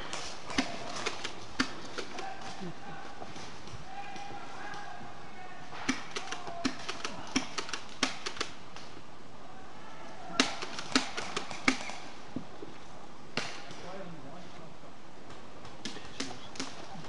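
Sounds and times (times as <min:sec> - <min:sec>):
airsoft guns firing: 0:00.0 - 0:02.6, 0:05.8 - 0:08.6, 0:10.4 - 0:12.2.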